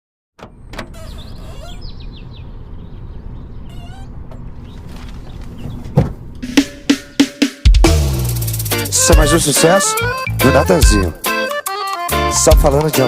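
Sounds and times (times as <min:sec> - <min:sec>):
birds chirping: 0:00.4 - 0:07.6
drum hits: 0:06.0 - 0:09.6.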